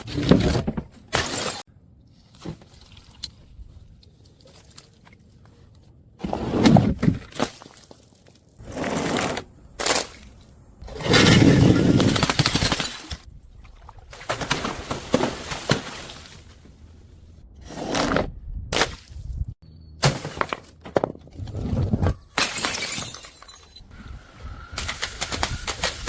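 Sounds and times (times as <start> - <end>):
glass bottles smashing: 22.3 - 23.9
rattle of glass shards: 22.4 - 23.9.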